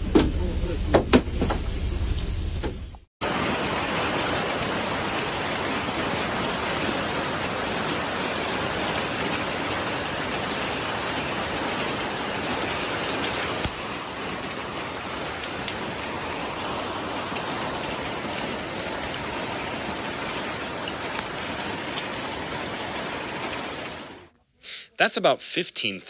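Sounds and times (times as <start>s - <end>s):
low rumble: 0.0s - 3.0s
heavy rain pouring: 3.2s - 24.3s.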